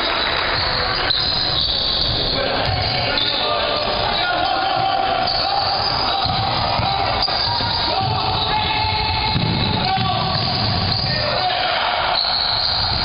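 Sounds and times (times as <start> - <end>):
basketball bouncing on court: 4.7 - 11.4.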